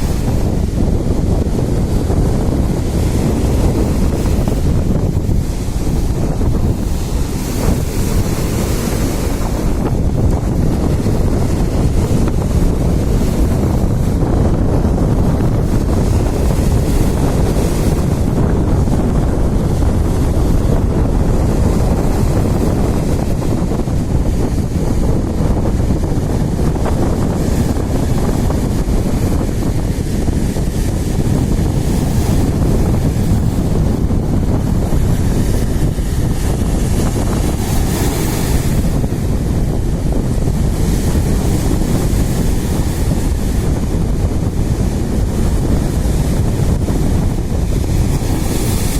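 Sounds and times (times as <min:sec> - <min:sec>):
waves hissing: 0:00.0 - 0:25.3, 0:26.1 - 0:46.1
wind buffeting microphone: 0:00.0 - 0:48.9.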